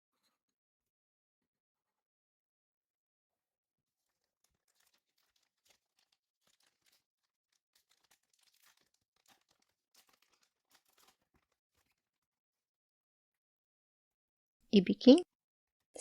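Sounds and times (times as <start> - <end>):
foil pack crinkling and tearing: 4.0 - 12.1.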